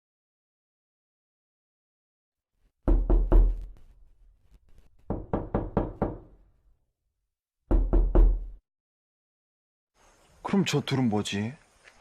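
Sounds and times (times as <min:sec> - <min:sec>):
knuckles knocking on door: 0:02.8 - 0:03.8, 0:05.0 - 0:06.4, 0:07.7 - 0:08.6.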